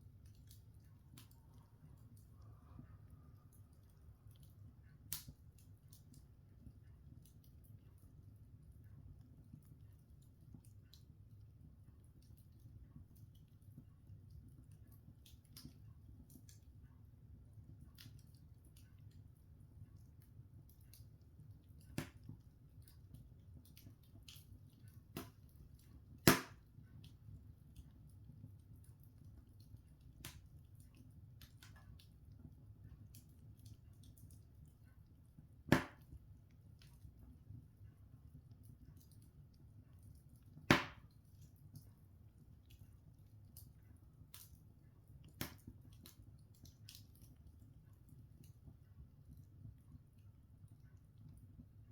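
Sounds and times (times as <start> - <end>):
log fire crackling: 0.0 - 51.9
low fire rumble: 0.0 - 51.9
sharp fire pops: 26.2 - 26.7, 35.7 - 36.2, 40.7 - 41.2.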